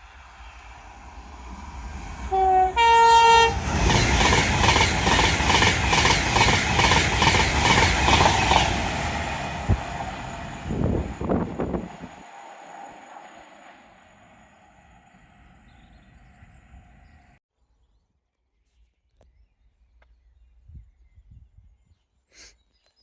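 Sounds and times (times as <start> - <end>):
train two-tone horn: 2.3 - 4.4
train wheels clattering on rails: 3.2 - 12.4.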